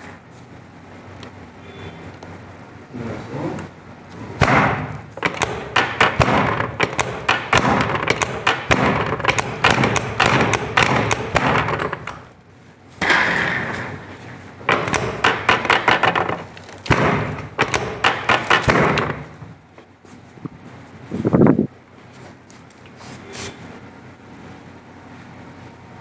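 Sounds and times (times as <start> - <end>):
drop table sharp knocks: 4.4 - 12.3, 14.7 - 19.5.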